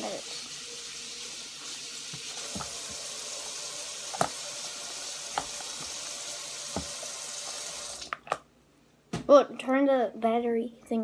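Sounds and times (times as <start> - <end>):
tap water running into sink: 0.0 - 8.2.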